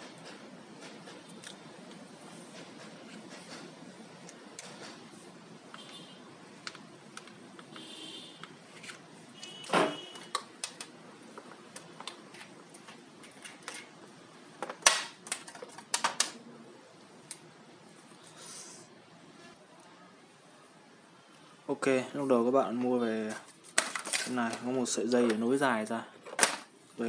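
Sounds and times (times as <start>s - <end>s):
tool parts clicking and knocking: 23.7s - 24.7s.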